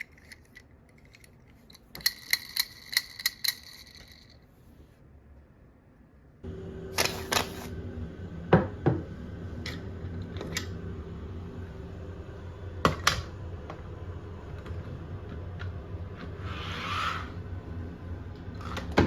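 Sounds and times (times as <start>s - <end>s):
toy cars clicking and clacking: 0.0s - 4.4s
steady low hum: 4.6s - 19.0s.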